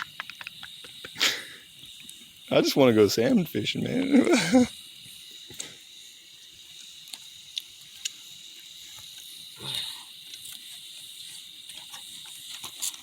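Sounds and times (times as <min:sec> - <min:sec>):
sharp small clicks: 0:00.0 - 0:01.1
crickets trilling: 0:00.0 - 0:13.0.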